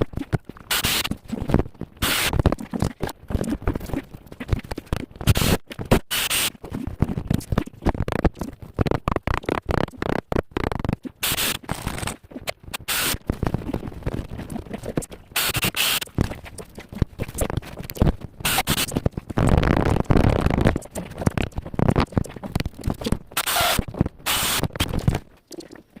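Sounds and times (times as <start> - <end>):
short bursts of hiss: 0.7 - 1.1, 12.8 - 13.2, 23.4 - 24.6.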